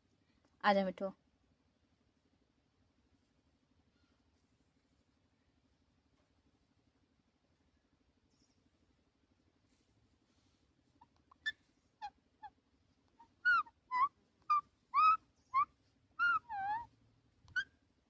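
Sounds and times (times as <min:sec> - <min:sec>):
parrot squawking: 0:13.2 - 0:16.9.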